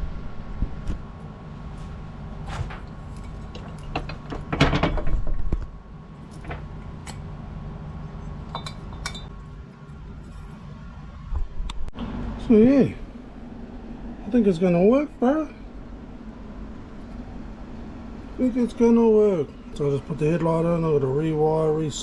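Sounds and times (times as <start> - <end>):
low steady hum: 0.0 - 22.0
metal parts clattering: 2.6 - 5.2
metal clinks and knocks: 3.1 - 5.3, 8.5 - 9.4.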